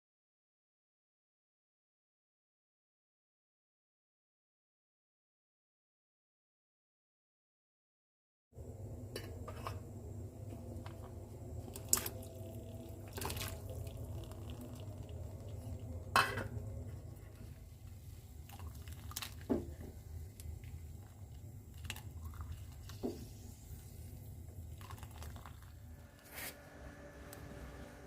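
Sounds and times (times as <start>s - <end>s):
steady low hum: 8.6s - 28.0s
liquid sounds: 11.6s - 26.0s.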